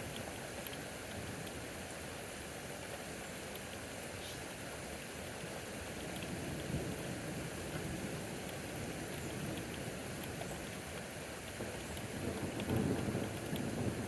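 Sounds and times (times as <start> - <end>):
steady rain falling: 0.0 - 14.0
low rumble of thunder: 6.3 - 10.4, 11.6 - 14.0.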